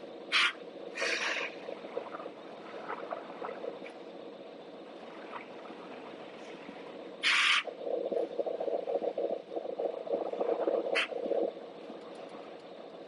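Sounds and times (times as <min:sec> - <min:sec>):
machinery humming: 0:00.0 - 0:13.0.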